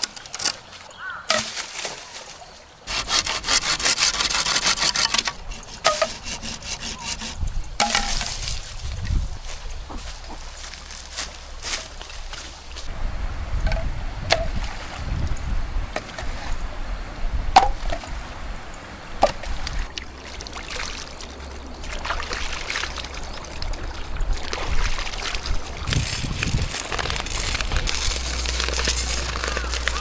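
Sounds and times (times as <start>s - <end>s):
forest stream rushing: 0.0s - 4.3s, 7.8s - 30.0s
rustling handling noise: 0.0s - 12.9s, 24.5s - 30.0s
sharp knocks: 4.7s - 8.6s.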